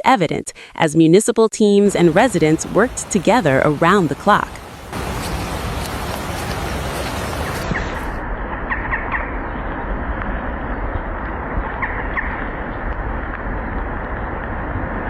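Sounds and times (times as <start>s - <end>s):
floodwater rushing: 1.8s - 8.2s
short bird calls: 4.6s - 8.2s.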